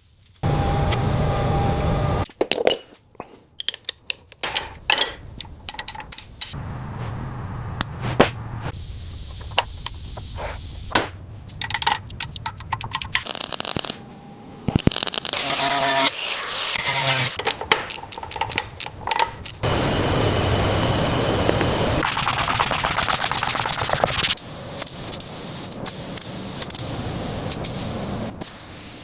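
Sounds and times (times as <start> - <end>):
metallic tool clicks and clinks: 3.6 - 6.6, 17.4 - 19.6.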